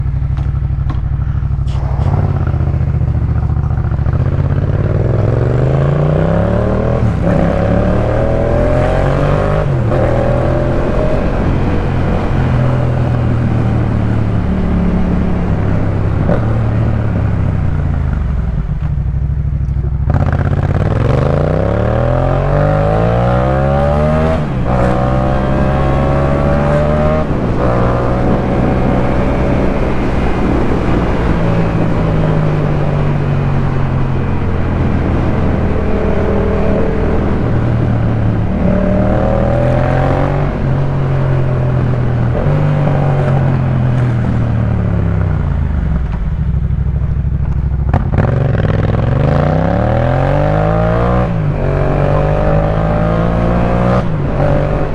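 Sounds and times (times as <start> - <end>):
motorcycle engine accelerating: 0.0 - 54.9.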